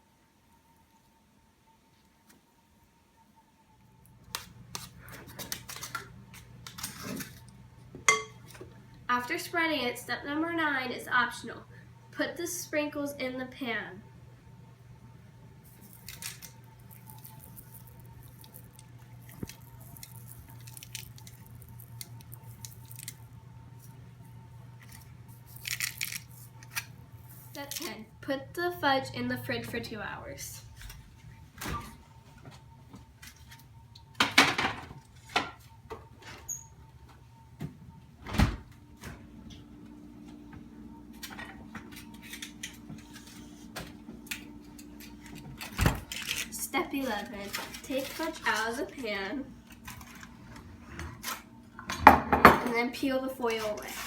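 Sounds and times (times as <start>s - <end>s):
steady low hum: 2.6s - 54.0s
sprinkles ticking onto fudge: 15.7s - 23.3s.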